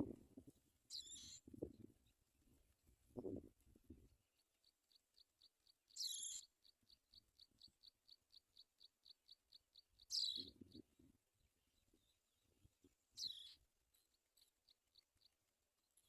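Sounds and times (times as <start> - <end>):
high bird calls: 0.9 - 1.5, 5.9 - 6.5, 10.0 - 10.8, 13.2 - 13.6.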